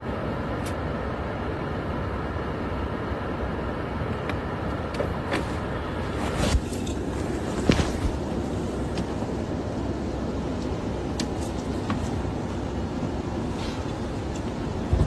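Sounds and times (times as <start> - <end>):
car engine and road noise: 0.0 - 15.0.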